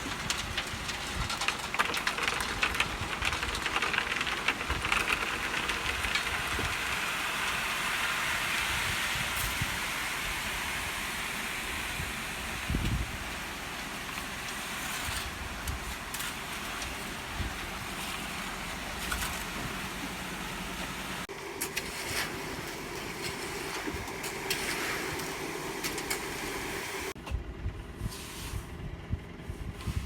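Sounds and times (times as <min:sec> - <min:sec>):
truck engine running: 0:00.0 - 0:29.7
knocks and scrapes: 0:12.7 - 0:26.5.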